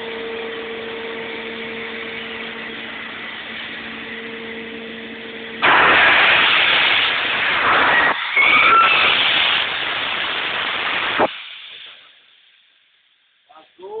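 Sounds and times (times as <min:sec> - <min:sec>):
loud rushing noise: 0:05.6 - 0:11.8.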